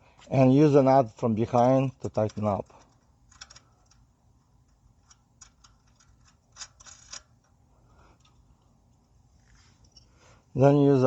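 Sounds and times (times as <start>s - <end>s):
nut clicking and rattling on bolt: 1.5s - 7.6s.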